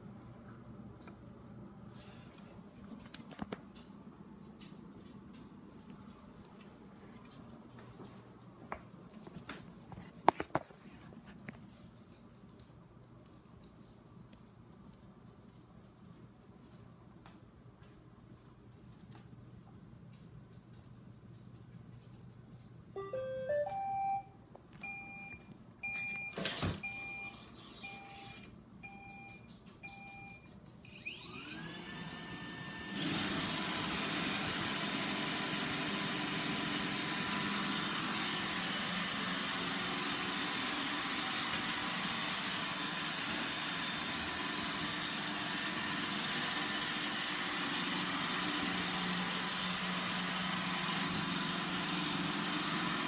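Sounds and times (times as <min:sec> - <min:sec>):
evenly spaced beeps: 0:23.0 - 0:24.3
robot vacuum motors whirring: 0:27.3 - 0:28.5, 0:30.9 - 0:53.0.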